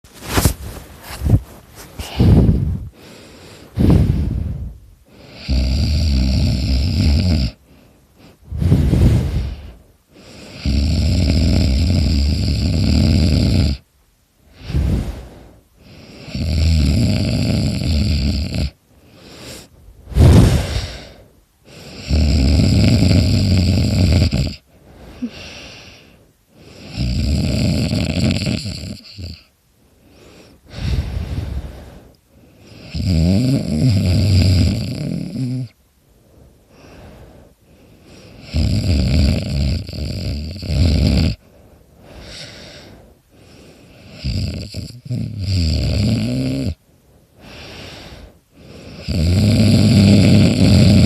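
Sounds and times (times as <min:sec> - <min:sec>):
soft breaths: 0:00.0 - 0:05.8, 0:07.5 - 0:11.4, 0:13.8 - 0:16.6, 0:18.7 - 0:23.4, 0:24.6 - 0:27.1, 0:29.0 - 0:33.0, 0:35.3 - 0:38.6, 0:41.3 - 0:44.2, 0:46.7 - 0:49.2
person snoring loudly: 0:03.8 - 0:07.6, 0:10.4 - 0:13.8, 0:16.0 - 0:18.8, 0:19.4 - 0:21.2, 0:21.8 - 0:26.0, 0:26.7 - 0:29.5, 0:32.8 - 0:35.8, 0:38.3 - 0:41.4, 0:44.0 - 0:46.8, 0:48.8 - 0:51.0.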